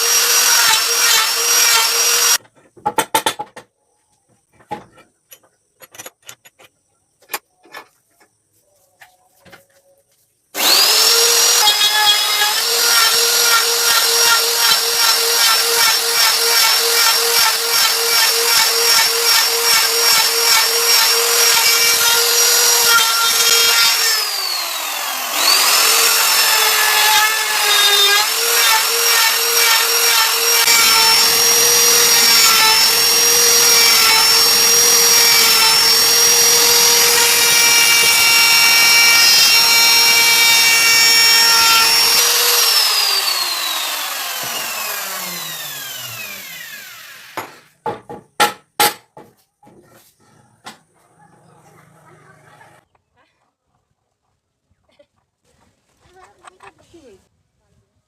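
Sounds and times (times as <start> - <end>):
electric power tool motor: 0.0 - 2.4, 10.6 - 47.4.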